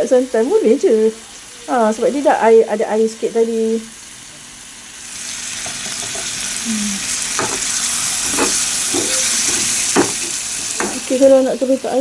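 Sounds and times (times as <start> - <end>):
curry sizzling in hot oil: 0.0 - 12.0
spatula knocking against pan: 7.4 - 11.1.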